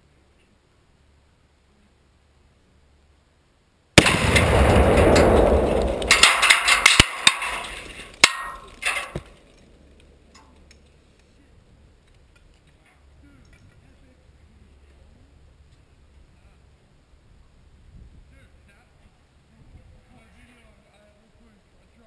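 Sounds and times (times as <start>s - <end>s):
loud explosion blast: 4.0s - 8.0s
debris knocking and clattering: 4.0s - 9.7s.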